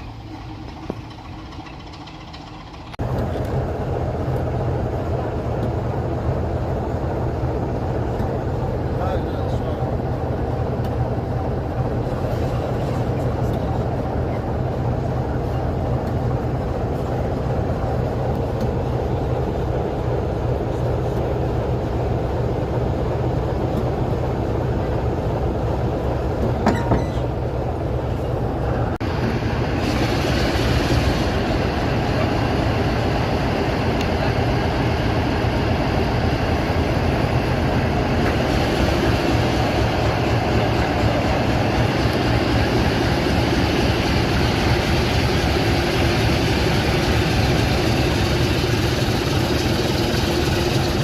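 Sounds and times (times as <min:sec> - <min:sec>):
train rail noise: 0:00.0 - 0:51.0.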